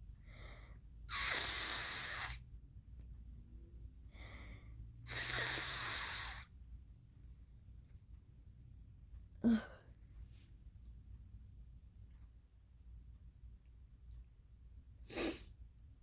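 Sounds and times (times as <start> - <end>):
quick breath in: 4.2 - 6.5.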